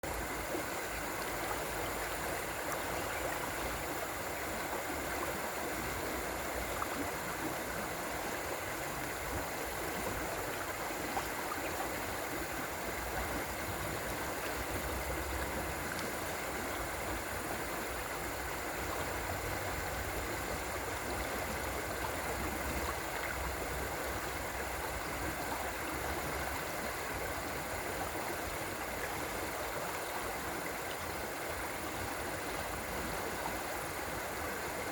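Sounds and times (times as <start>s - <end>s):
river water rushing: 0.0s - 34.9s.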